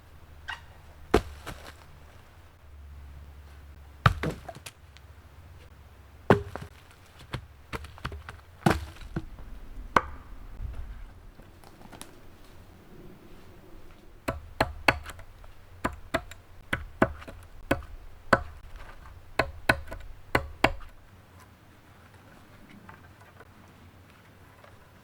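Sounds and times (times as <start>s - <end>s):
axe chopping wood: 1.1s - 1.9s, 4.0s - 4.8s, 6.3s - 9.3s, 14.2s - 21.0s.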